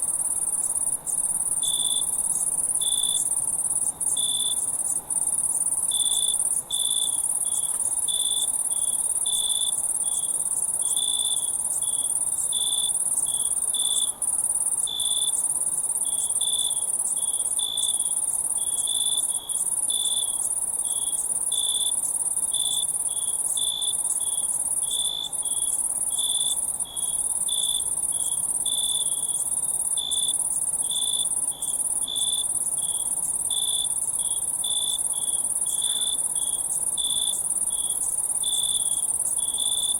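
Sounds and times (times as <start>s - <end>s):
crickets chirping: 0.0s - 39.9s
high-pitched insect trill: 0.1s - 39.9s.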